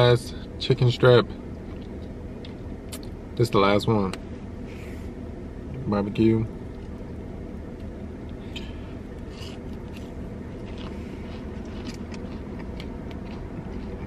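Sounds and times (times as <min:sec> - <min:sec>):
person chewing: 0:01.6 - 0:03.1, 0:07.8 - 0:14.0.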